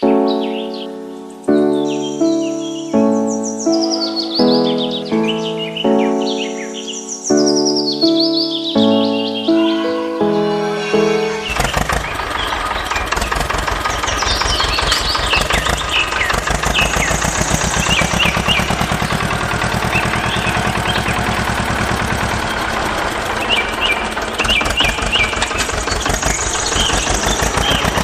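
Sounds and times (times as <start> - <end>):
birds chirping: 0.0 - 28.0
small engine puttering: 10.8 - 28.0.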